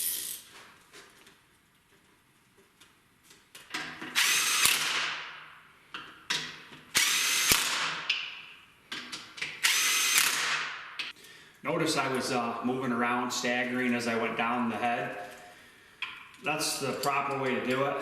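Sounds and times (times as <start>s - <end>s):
cordless impact wrench: 4.0s - 5.3s, 6.9s - 8.2s, 9.4s - 11.1s.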